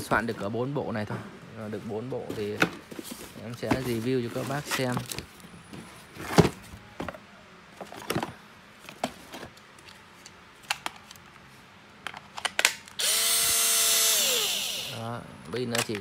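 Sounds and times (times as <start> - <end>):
drill motor whining: 13.0 - 15.2.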